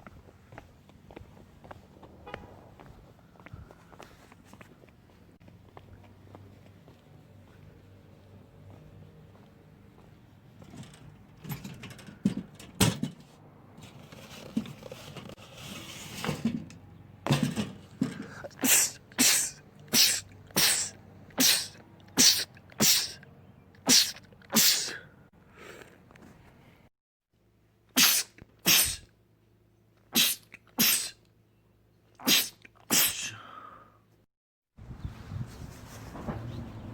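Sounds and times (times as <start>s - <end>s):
man sneezing: 18.2s - 23.2s, 23.9s - 25.1s, 28.0s - 29.1s, 30.1s - 31.2s, 32.2s - 33.6s.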